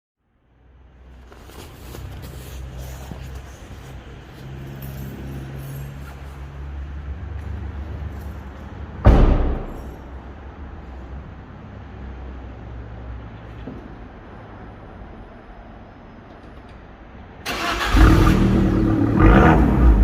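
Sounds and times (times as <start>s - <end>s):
loud exhaust burst: 17.5s - 20.0s.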